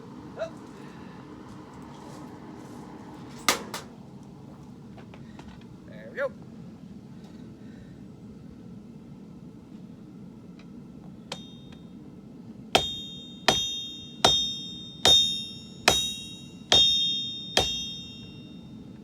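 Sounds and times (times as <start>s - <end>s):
hammer striking steel on anvil: 11.3s - 11.9s, 12.8s - 18.8s.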